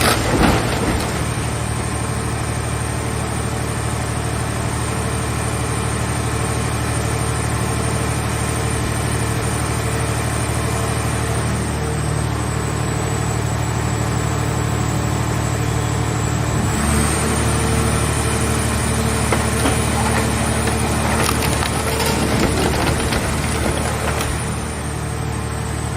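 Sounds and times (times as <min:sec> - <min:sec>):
hydraulic power unit droning: 0:08.8 - 0:25.9
cracks and clicks: 0:19.2 - 0:24.6.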